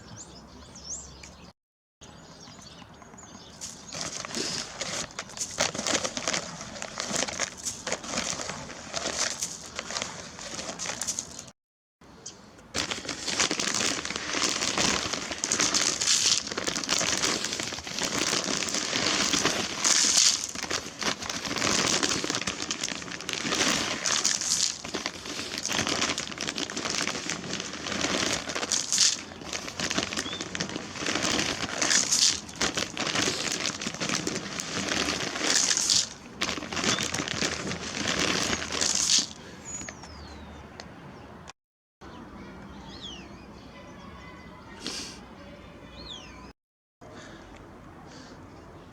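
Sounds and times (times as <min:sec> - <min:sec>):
plastic bag crinkling: 0:03.6 - 0:11.5, 0:12.7 - 0:40.0.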